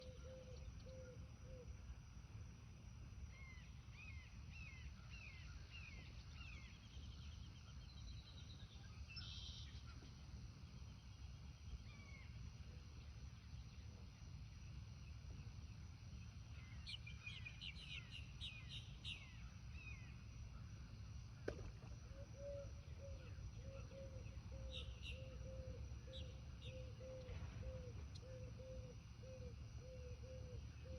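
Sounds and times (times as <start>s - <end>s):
bird chirping: 22.4s - 30.9s.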